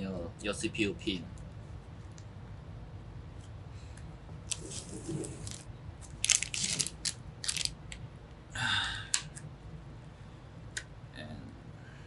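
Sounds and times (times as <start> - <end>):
packaging rustle: 4.5 - 7.8
plastic packaging crinkling: 5.4 - 7.8.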